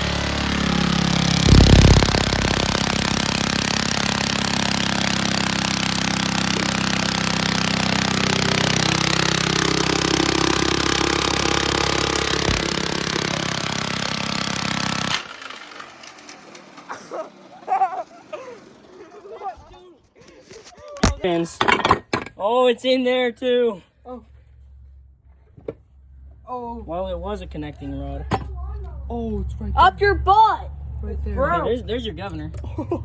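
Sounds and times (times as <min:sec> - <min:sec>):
lawnmower engine with rod knock: 0:00.0 - 0:17.8.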